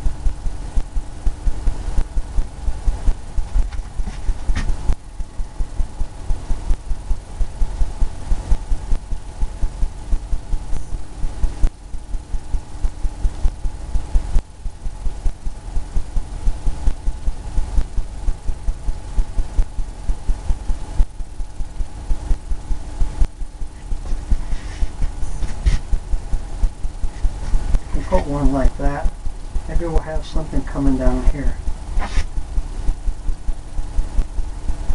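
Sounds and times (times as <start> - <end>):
steady low hum: 0.0 - 34.9
paintbrush dabbing on canvas: 23.7 - 25.9, 32.0 - 32.4.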